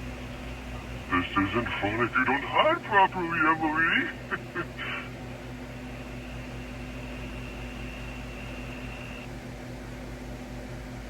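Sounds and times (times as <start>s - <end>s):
low electrical hum: 0.0s - 11.0s
thin high whine: 0.5s - 9.3s.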